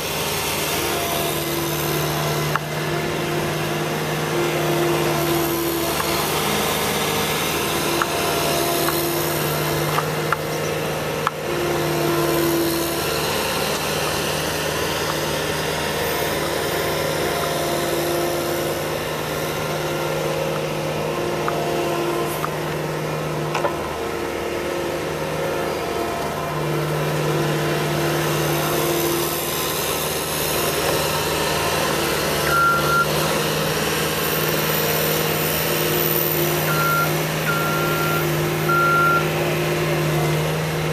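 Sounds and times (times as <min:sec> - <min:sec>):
loader engine running: 0:00.0 - 0:40.9
reversing alarm beeping: 0:32.4 - 0:33.2, 0:36.5 - 0:39.4.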